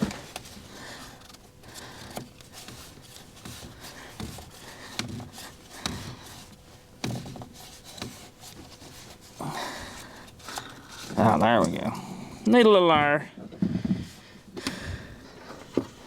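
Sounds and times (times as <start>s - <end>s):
hands handling things: 0.0s - 12.5s.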